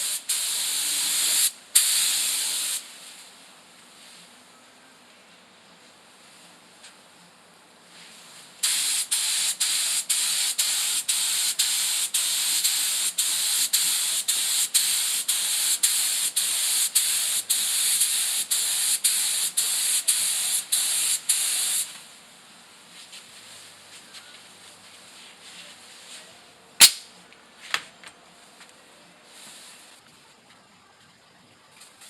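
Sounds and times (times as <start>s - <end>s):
paint spray gun hissing: 0.0s - 3.1s, 8.6s - 22.0s, 26.8s - 27.0s.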